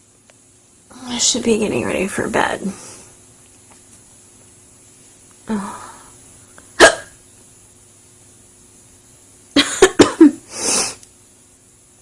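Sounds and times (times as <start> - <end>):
coughs: 6.8 - 7.2, 9.6 - 10.4
woman hiccuping: 6.8 - 7.2, 9.6 - 10.4.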